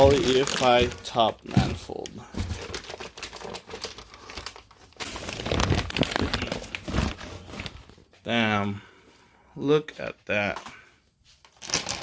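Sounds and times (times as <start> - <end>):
packaging crinkling and rustling: 0.0 - 8.1, 11.4 - 12.0.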